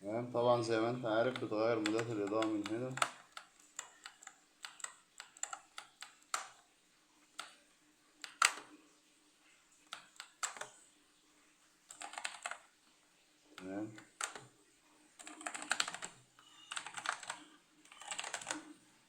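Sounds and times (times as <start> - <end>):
clicky mechanical keyboard typing: 1.2 - 6.7, 8.2 - 8.8, 9.8 - 10.8, 11.9 - 12.8, 13.6 - 14.5, 15.2 - 18.8.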